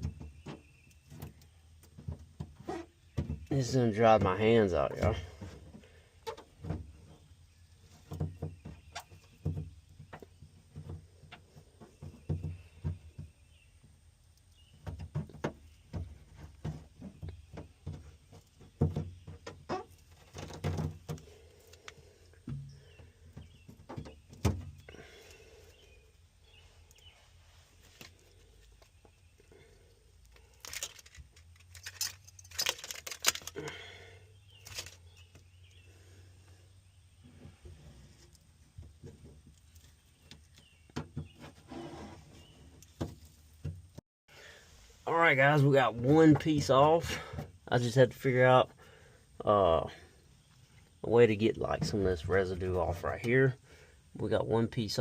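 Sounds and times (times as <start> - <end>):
scraping mat off metal floor: 41.4 - 42.6.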